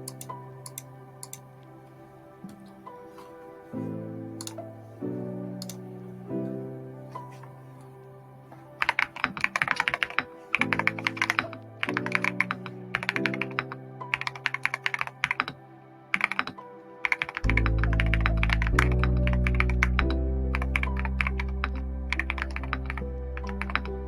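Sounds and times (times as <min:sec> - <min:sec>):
typing on mechanical keyboard: 0:08.8 - 0:23.9
background music with bass: 0:17.4 - 0:24.0.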